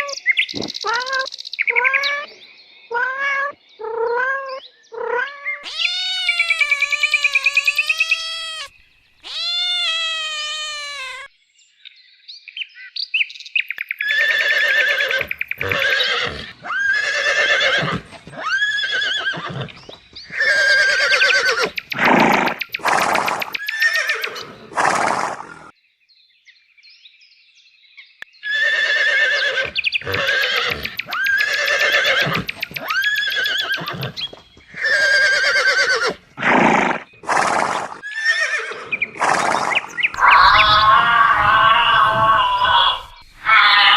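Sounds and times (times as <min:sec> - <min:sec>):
long wavering animal calls: 0:00.8 - 0:11.3, 0:39.7 - 0:43.9
horses whinnying: 0:05.6 - 0:11.3, 0:14.0 - 0:25.7, 0:28.4 - 0:43.9.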